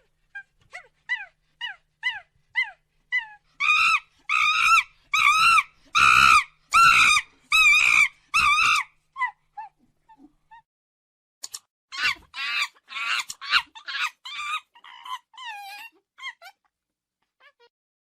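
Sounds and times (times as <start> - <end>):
monkey harsh calls: 3.6 - 9.4, 11.9 - 16.6.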